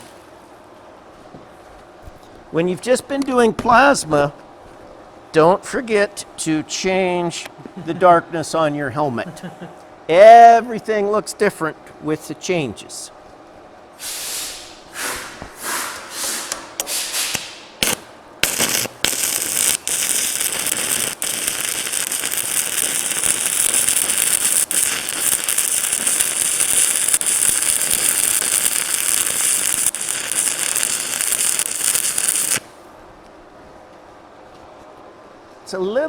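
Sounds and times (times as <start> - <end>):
welding arc crackling: 16.1 - 32.8
welding rod sputtering starts: 17.2 - 32.7.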